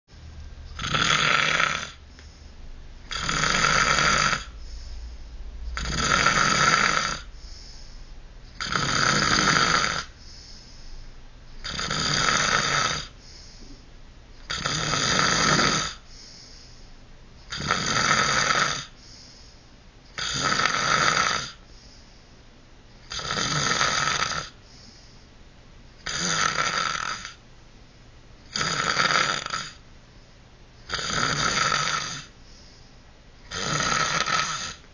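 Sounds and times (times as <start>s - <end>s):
loud snoring: 0.7s - 2.0s, 3.1s - 4.6s, 5.7s - 7.7s, 8.6s - 10.2s, 11.6s - 13.2s, 14.4s - 16.4s, 17.5s - 19.0s, 20.2s - 21.6s, 23.1s - 24.6s, 26.0s - 27.4s, 28.5s - 29.8s, 30.9s - 32.3s, 33.5s - 34.9s
faint breath: 2.0s - 2.8s, 4.4s - 5.6s, 7.2s - 8.2s, 10.0s - 11.2s, 13.1s - 14.0s, 15.9s - 17.1s, 18.8s - 19.8s, 21.5s - 22.5s, 24.5s - 25.4s, 30.1s - 30.5s, 32.2s - 33.1s.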